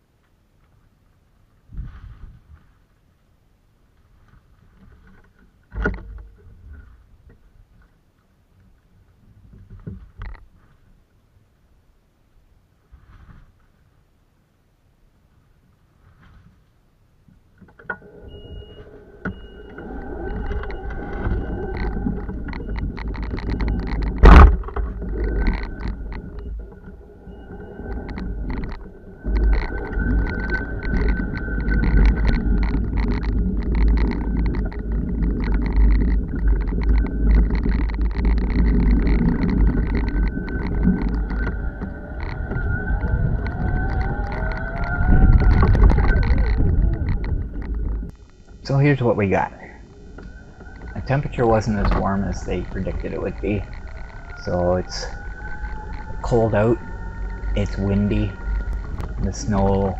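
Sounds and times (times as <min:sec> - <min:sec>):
wind rumbling on microphone: 0:00.0 - 0:11.8, 0:15.4 - 0:59.9
electric motor whining: 0:49.8 - 0:59.9.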